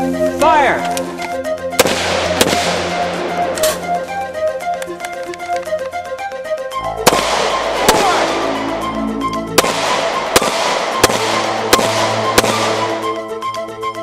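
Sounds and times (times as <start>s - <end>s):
background music: 0.0s - 14.0s
pistol shots with echo: 1.8s - 3.7s, 7.0s - 8.6s, 9.6s - 13.2s.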